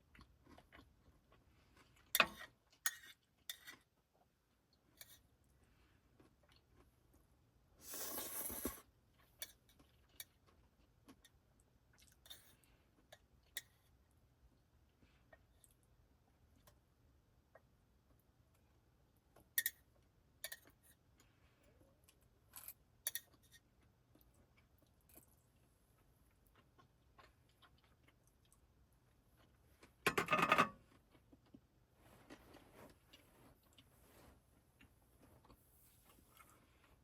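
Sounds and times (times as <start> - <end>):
soft rustling: 32.0 - 37.0.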